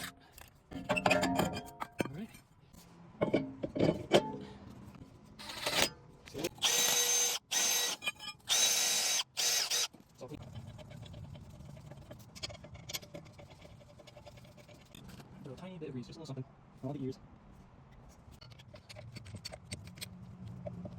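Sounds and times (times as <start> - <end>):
power tool whining: 6.6 - 9.9.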